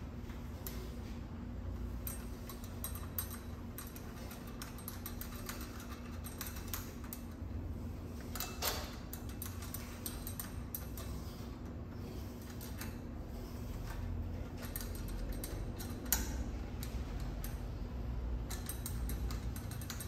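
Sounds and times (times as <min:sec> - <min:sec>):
small hardware clicking: 0:02.0 - 0:07.4, 0:14.5 - 0:20.0.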